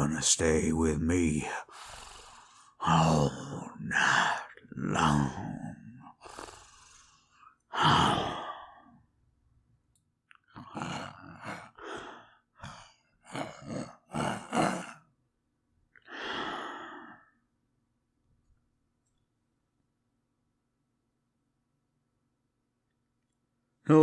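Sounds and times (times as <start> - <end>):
man breathing heavily and sighing: 1.6 - 9.0, 10.6 - 15.0, 16.0 - 17.4.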